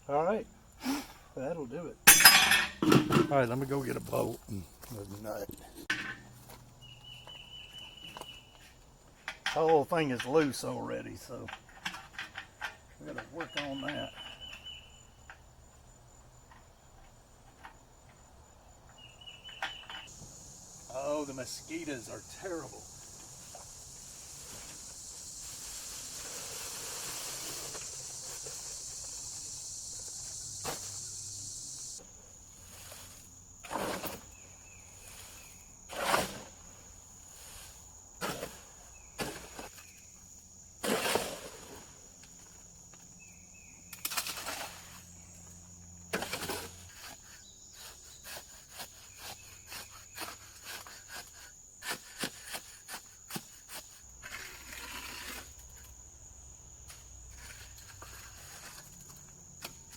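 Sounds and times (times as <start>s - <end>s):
insect chorus: 0.0s - 59.9s
high insect chirring: 17.9s - 35.9s, 42.0s - 46.1s.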